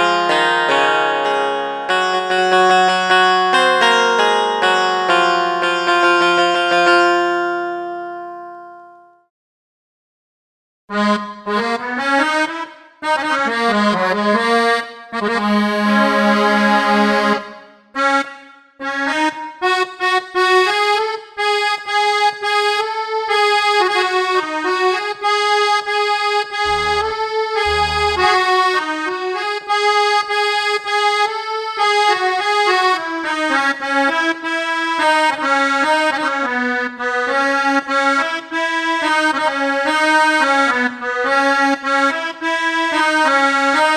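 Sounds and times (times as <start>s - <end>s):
accordion melody over chords: 0.0s - 9.3s, 10.9s - 43.9s
short low notes: 26.6s - 28.6s.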